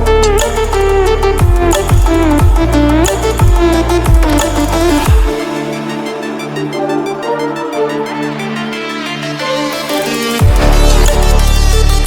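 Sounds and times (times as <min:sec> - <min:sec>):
deep bass hits: 0:00.0 - 0:05.4.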